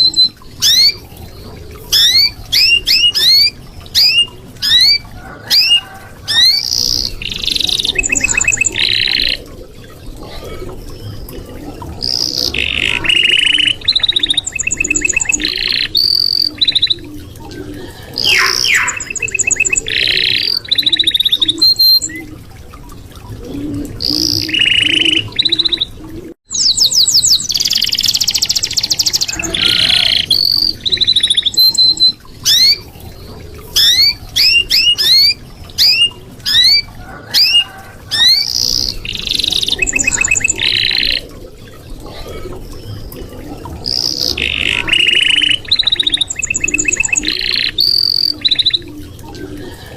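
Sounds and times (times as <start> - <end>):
canary singing trills: 18.2 - 22.1.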